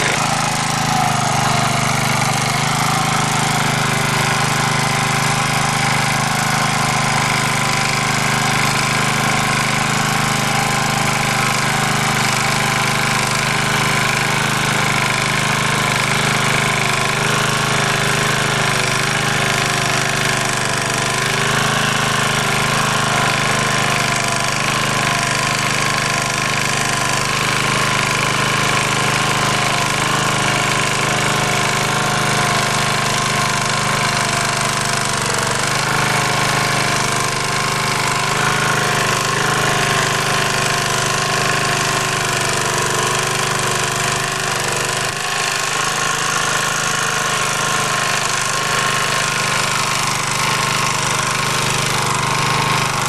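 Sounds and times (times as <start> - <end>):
rotary tiller cutting soil: 0.0 - 53.0
tractor engine under load: 0.0 - 53.0.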